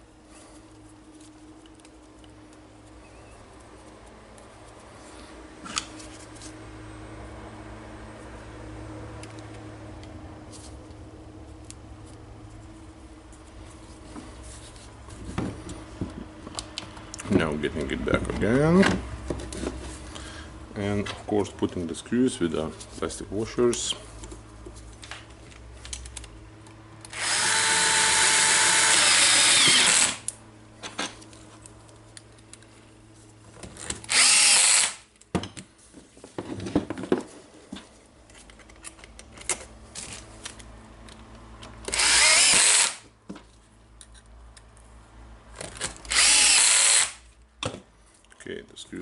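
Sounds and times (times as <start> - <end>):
power screwdriver driving screws: 27.1 - 30.3, 34.0 - 35.0, 41.9 - 43.1, 46.0 - 47.2.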